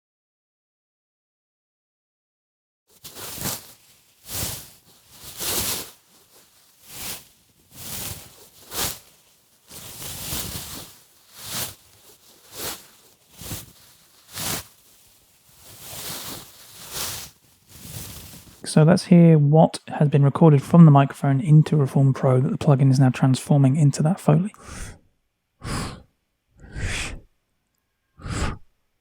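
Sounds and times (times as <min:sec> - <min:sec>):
burlap fabric rubbing: 0:02.9 - 0:18.6.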